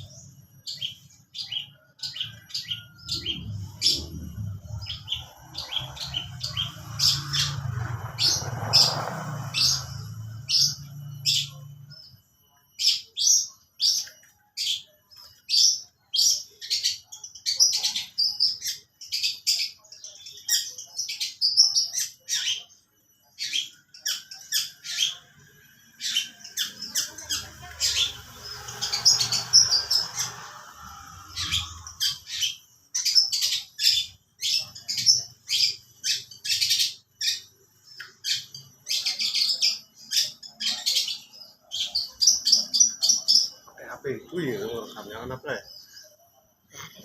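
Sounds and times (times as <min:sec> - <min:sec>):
bird shrill chirps and squawks: 0:00.0 - 0:47.0
low rumble: 0:03.0 - 0:10.2.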